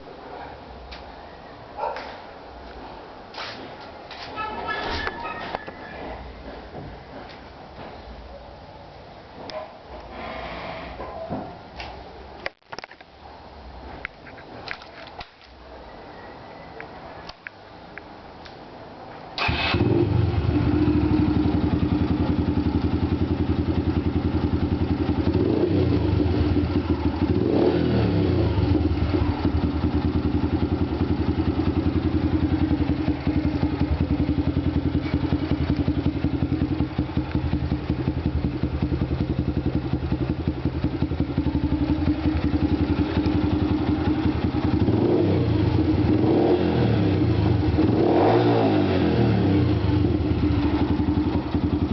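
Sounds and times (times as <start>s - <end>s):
motorcycle engine starting and idling: 19.3s - 51.9s
motorcycle engine revving: 19.4s - 51.9s.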